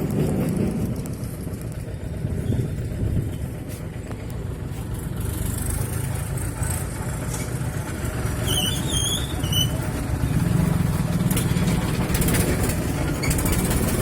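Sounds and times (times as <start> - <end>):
bulldozer diesel engine rumbling: 0.0 - 14.0
high wavering squeaks: 8.4 - 10.0.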